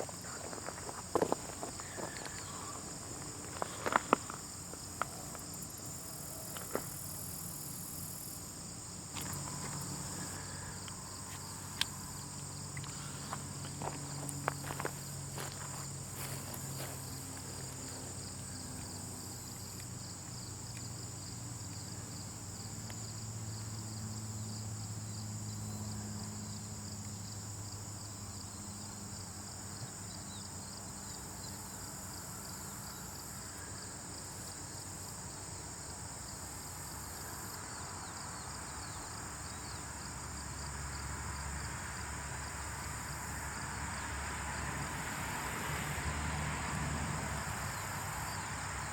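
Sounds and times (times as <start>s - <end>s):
insect chirring: 0.0s - 27.4s.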